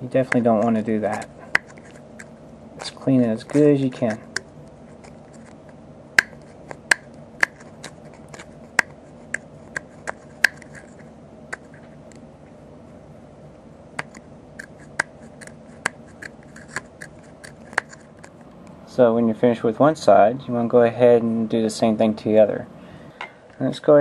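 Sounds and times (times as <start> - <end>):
cotton swab scrubbing metal contacts: 0.2 - 5.6, 6.2 - 11.9, 14.0 - 18.4.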